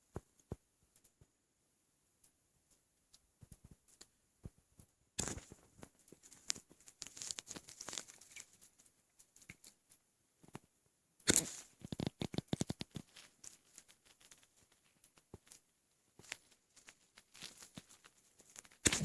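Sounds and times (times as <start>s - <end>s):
quick crackling clicks in belly: 11.2s - 15.6s, 17.2s - 19.0s.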